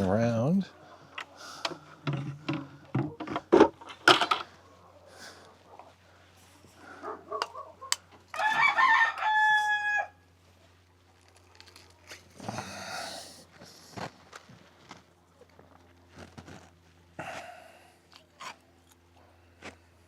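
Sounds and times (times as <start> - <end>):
sharp knocks and clatter: 1.7 - 4.5
rooster crowing: 7.3 - 10.3.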